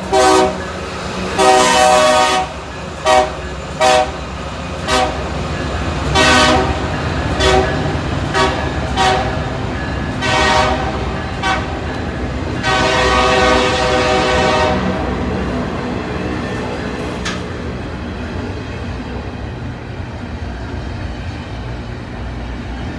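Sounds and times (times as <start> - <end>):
train horn blasts: 0.0 - 4.2, 4.8 - 5.2, 6.1 - 9.5, 10.2 - 12.0, 12.6 - 15.2.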